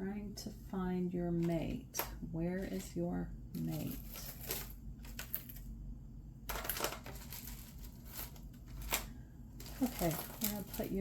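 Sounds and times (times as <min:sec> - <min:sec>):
jewelry clinking and rustling: 0:03.5 - 0:05.7, 0:06.5 - 0:11.0.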